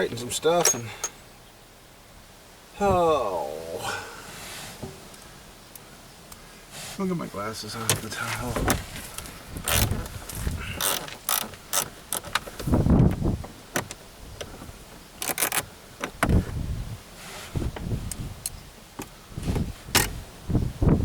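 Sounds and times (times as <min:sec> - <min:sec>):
dull thumps: 0:07.8 - 0:14.8
tools clicking and clattering: 0:10.8 - 0:12.6.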